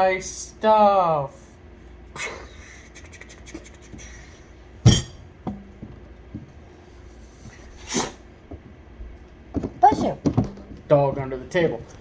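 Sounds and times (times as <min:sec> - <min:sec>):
dog sneezing: 0:07.6 - 0:08.3.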